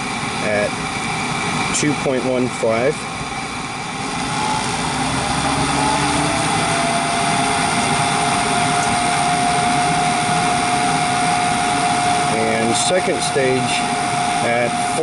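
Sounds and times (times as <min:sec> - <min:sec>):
gas furnace humming: 0:00.0 - 0:15.0
steady whine: 0:00.0 - 0:15.0.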